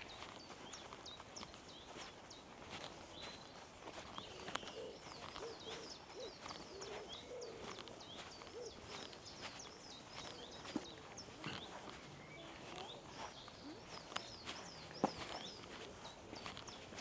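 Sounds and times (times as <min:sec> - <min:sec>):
faint footsteps on a path: 0:00.0 - 0:17.0
small birds chirping: 0:00.0 - 0:17.0
low bird call: 0:03.2 - 0:16.7.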